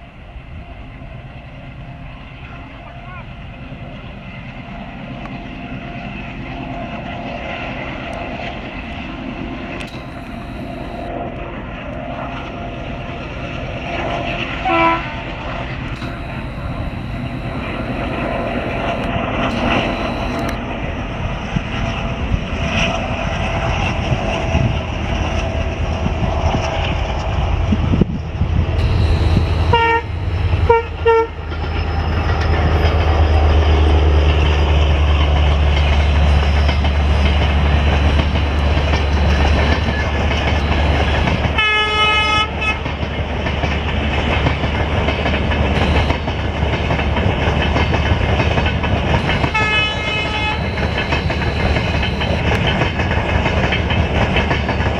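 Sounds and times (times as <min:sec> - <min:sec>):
train rumbling: 0:00.0 - 0:54.9
train horn toots: 0:14.6 - 0:15.3, 0:16.0 - 0:20.6, 0:28.8 - 0:31.7, 0:36.1 - 0:42.9, 0:45.7 - 0:47.0, 0:49.1 - 0:52.8.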